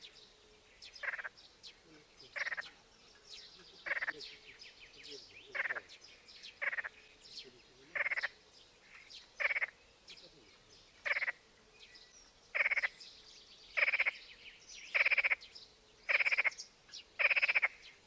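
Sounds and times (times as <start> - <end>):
small birds chirping: 0.0 - 18.0
frog rattling croaks: 1.0 - 1.3, 2.3 - 2.7, 3.8 - 4.2, 5.5 - 5.9, 6.6 - 6.9, 7.9 - 8.4, 9.4 - 9.7, 11.0 - 11.4, 12.6 - 12.9, 13.8 - 14.1, 15.0 - 15.4, 16.1 - 16.5, 17.2 - 17.8.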